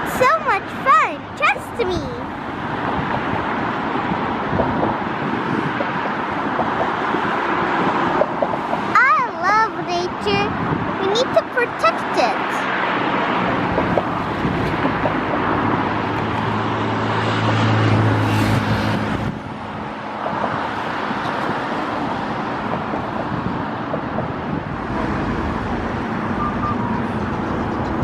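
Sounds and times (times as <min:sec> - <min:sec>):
road traffic noise: 0:00.0 - 0:28.0
low engine hum: 0:22.9 - 0:28.0.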